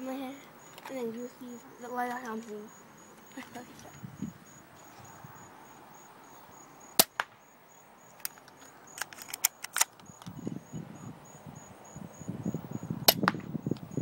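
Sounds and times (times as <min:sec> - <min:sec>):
airsoft gun snapping: 0:08.2 - 0:10.3
light clicks and snaps: 0:08.2 - 0:10.4.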